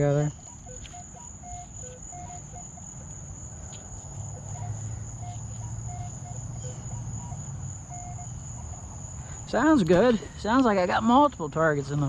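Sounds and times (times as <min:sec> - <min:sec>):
metal detector beeps: 0:00.0 - 0:03.1, 0:03.7 - 0:09.0
crickets chirring: 0:00.0 - 0:12.0.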